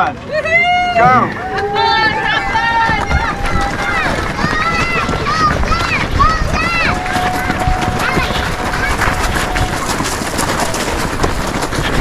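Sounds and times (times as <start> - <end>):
runners' footfalls rustling: 1.4 - 12.0.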